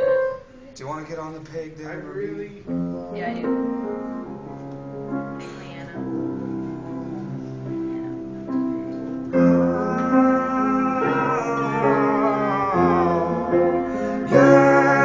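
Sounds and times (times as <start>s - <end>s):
piano chords: 0.0s - 0.7s, 1.6s - 15.0s.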